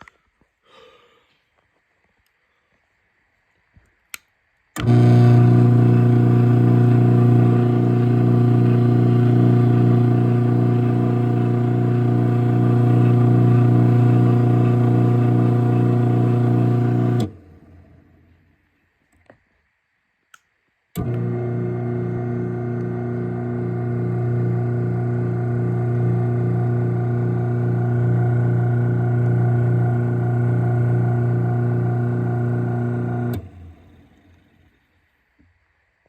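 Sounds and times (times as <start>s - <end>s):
garage door opener motor: 4.8s - 18.1s, 21.0s - 34.3s.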